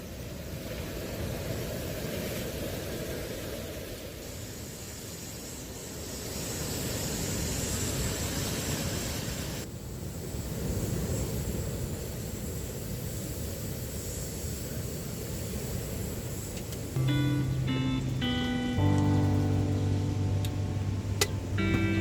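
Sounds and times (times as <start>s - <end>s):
sea waves washing onto beach: 0.0s - 17.0s.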